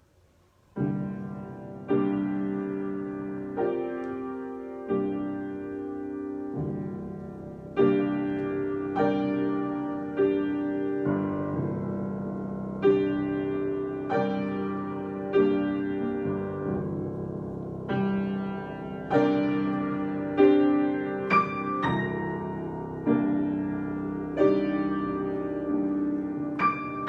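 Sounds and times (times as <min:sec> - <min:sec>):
slow piano chords: 0:00.0 - 0:27.0.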